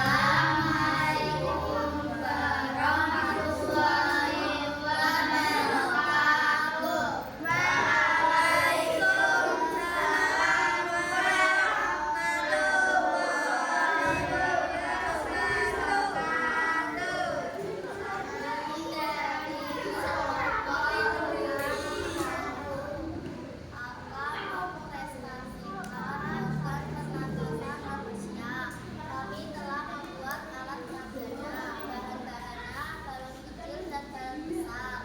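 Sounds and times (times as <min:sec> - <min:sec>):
children singing: 0:00.0 - 0:23.3, 0:25.4 - 0:29.1.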